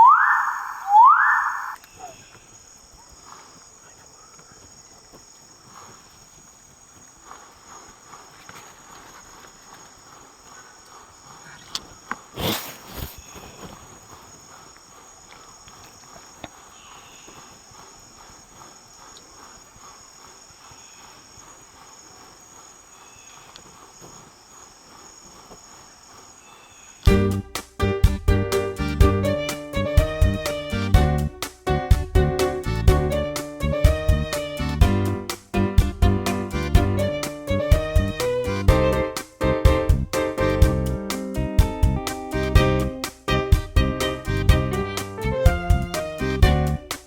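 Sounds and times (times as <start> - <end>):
insects buzzing and trilling: 0.0 - 27.8.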